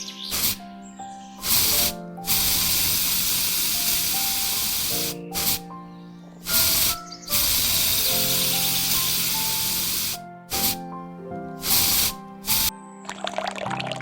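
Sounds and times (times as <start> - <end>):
soft background music: 0.0 - 14.0
spray hissing: 0.3 - 0.6, 1.4 - 5.7, 6.4 - 10.9, 11.6 - 12.7.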